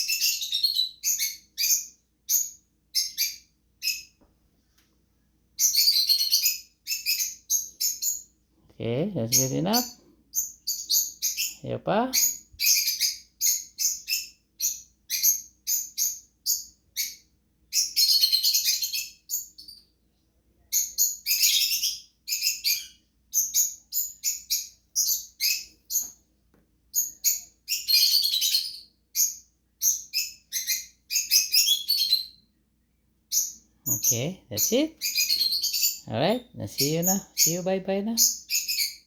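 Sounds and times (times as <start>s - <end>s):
cockatiel chirping: 0.0s - 4.2s, 5.6s - 8.3s, 12.2s - 19.9s, 20.7s - 26.2s, 26.9s - 32.5s, 33.3s - 36.1s, 36.7s - 39.0s.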